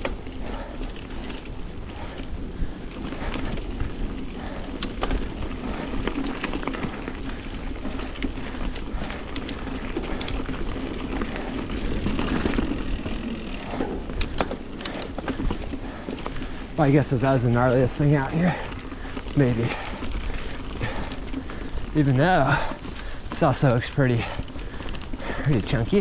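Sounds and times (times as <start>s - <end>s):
bike clicks and knocks: 0.0s - 2.3s, 2.9s - 16.5s
tyres rumbling on dirt and rock: 5.2s - 15.8s.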